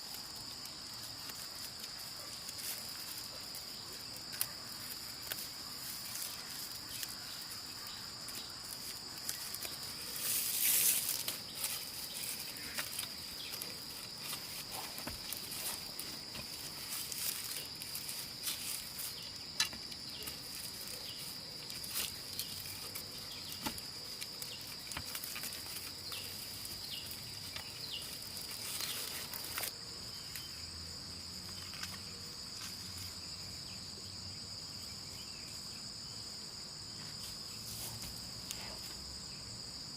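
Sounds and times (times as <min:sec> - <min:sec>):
rustling: 0:00.0 - 0:29.8
insects droning: 0:00.0 - 0:39.9.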